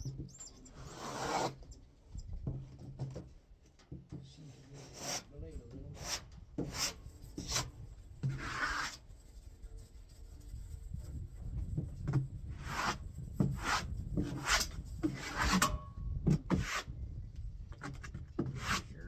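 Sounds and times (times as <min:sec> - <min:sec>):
short scraping rubs: 0:00.7 - 0:01.7, 0:04.7 - 0:11.2, 0:12.5 - 0:15.8, 0:17.8 - 0:19.0
wind rumble on microphone: 0:01.7 - 0:02.8, 0:05.3 - 0:19.0.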